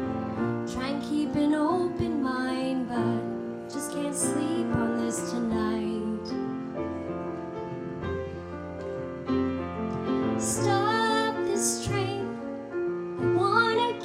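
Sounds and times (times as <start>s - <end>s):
slow gentle piano music: 0.0s - 14.0s
woman singing softly: 0.6s - 6.6s, 10.4s - 12.6s, 13.2s - 14.0s.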